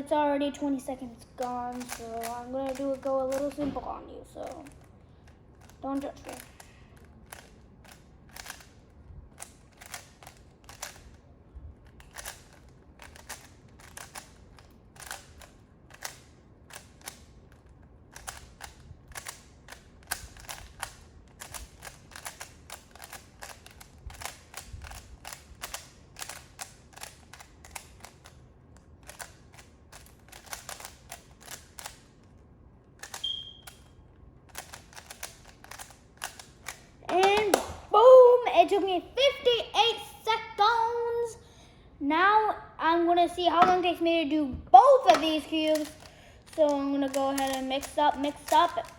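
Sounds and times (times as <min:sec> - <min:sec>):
puzzle cube clicking: 0:01.4 - 0:03.6, 0:04.4 - 0:04.9, 0:05.6 - 0:11.2, 0:11.8 - 0:37.9, 0:45.0 - 0:48.9.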